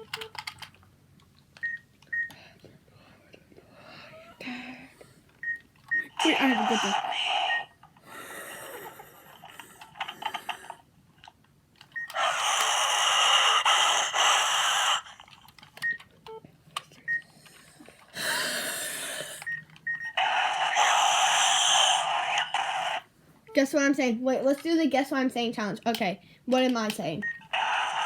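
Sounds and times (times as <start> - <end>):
electronic toy beeps: 5.4 - 7.8, 19.4 - 23.7, 27.2 - 27.5
harsh hissy noise: 20.2 - 23.0.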